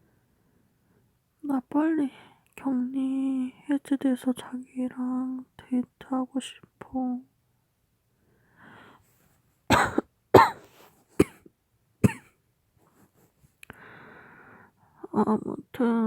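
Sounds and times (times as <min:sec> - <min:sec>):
woman coughing hard: 0:09.7 - 0:12.4.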